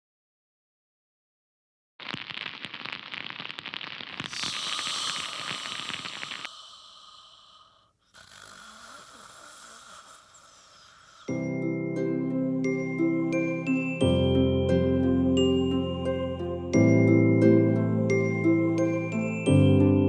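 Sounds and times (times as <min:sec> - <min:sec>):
person snoring: 0:04.2 - 0:11.6.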